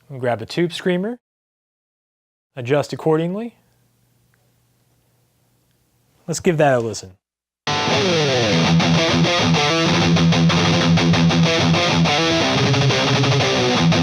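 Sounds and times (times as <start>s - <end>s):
distorted electric guitar riff: 7.7s - 14.0s.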